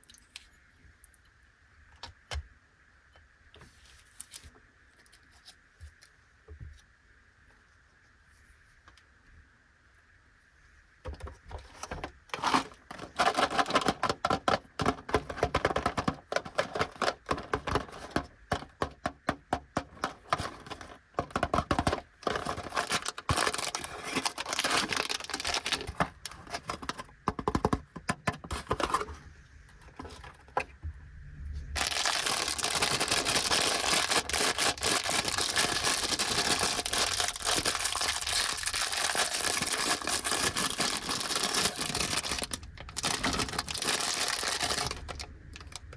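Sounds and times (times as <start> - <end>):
plastic packaging crinkling and tearing: 11.8 - 18.9, 19.8 - 27.1, 31.8 - 45.9.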